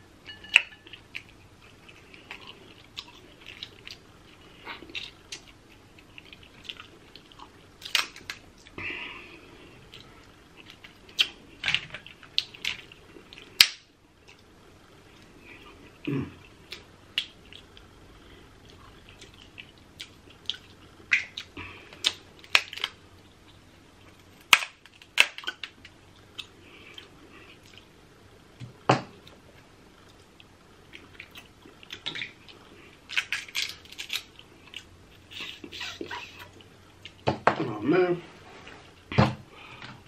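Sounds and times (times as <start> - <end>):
chewing and lip-smacking: 0.9 - 8.8, 16.4 - 17.9, 18.6 - 24.2, 24.9 - 27.9
crab shell cracking: 33.1 - 34.8.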